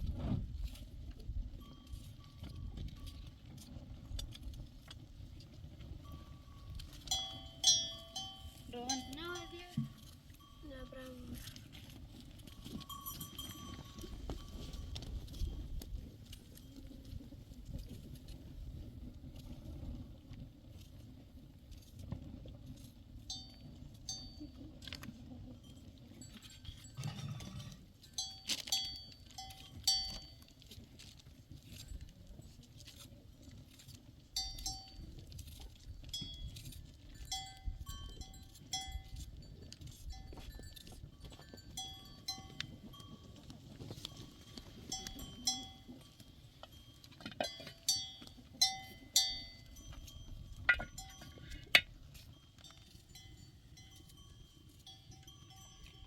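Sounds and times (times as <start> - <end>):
livestock bells clinking: 1.5 - 3.5, 5.8 - 15.8, 23.3 - 24.8, 25.4 - 30.7, 34.3 - 56.0.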